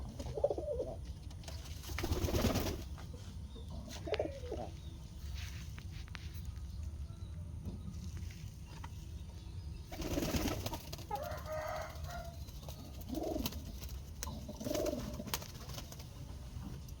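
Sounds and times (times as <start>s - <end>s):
pigeons cooing: 0.0s - 1.1s, 1.9s - 4.9s, 9.9s - 17.0s.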